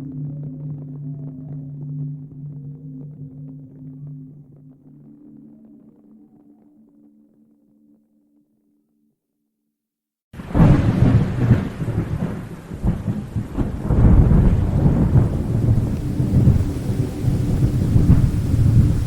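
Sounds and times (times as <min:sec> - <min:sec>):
deep crackling thunder rumble: 0:10.4 - 0:19.0
heavy rain hissing: 0:10.4 - 0:19.0.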